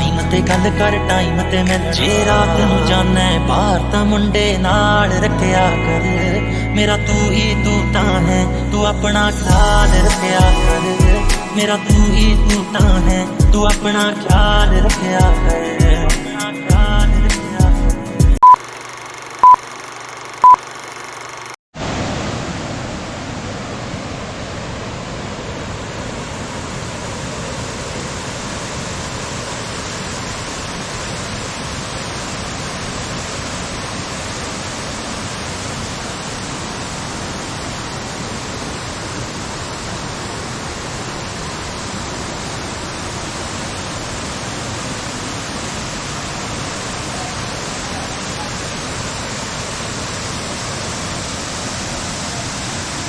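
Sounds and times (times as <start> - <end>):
waterfall rushing: 25.2 - 53.0.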